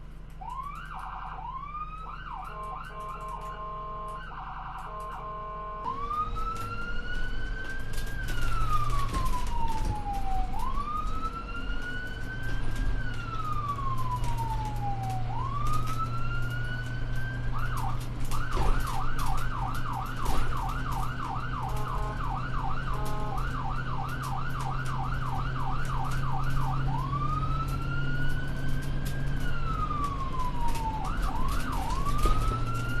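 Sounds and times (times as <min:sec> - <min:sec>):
electronic siren wailing and yelping: 0:00.4 - 0:12.4.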